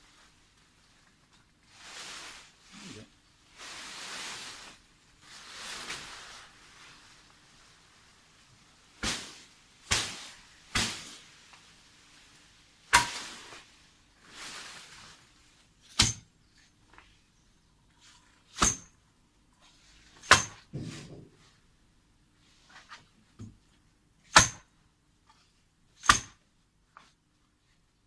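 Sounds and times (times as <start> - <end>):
metal hand tool striking: 12.9 - 13.2, 16.0 - 16.3, 18.6 - 18.9, 20.2 - 20.6, 24.3 - 24.6, 26.0 - 26.4.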